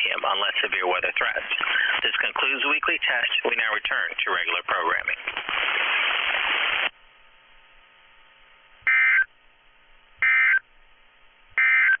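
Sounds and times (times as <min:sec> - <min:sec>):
radio static hiss: 0:00.0 - 0:07.0
data tone bursts: 0:08.9 - 0:09.3.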